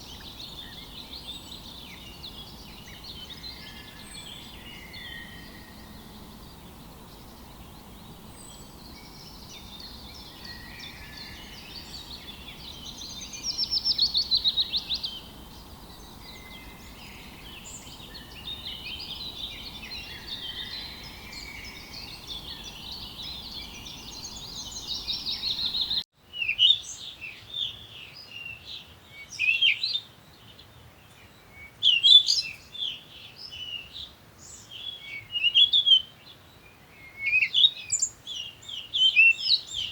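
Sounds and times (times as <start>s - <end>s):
birds singing: 0.0s - 39.9s.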